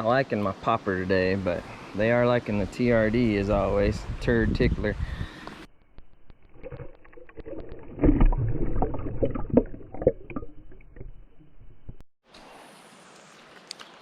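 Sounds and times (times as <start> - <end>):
water sloshing: 6.3 - 12.0.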